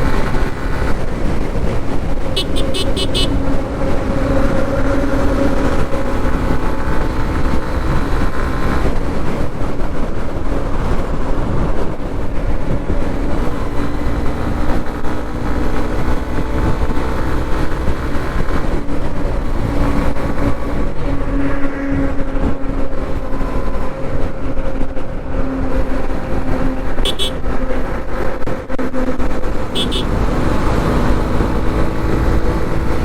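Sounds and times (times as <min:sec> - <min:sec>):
motorcycle engine running: 0:00.0 - 0:21.0, 0:27.1 - 0:27.5, 0:29.7 - 0:30.3
wind rushing over microphone: 0:00.0 - 0:33.0.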